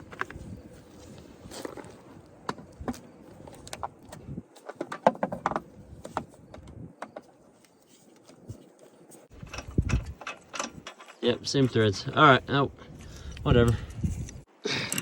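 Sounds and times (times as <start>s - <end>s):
metal parts clicking and tapping: 9.3s - 11.8s.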